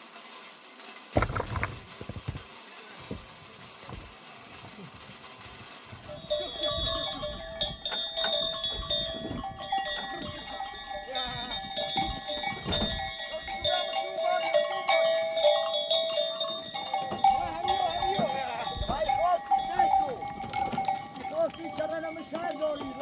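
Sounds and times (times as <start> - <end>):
livestock bells clinking: 5.9 - 23.0.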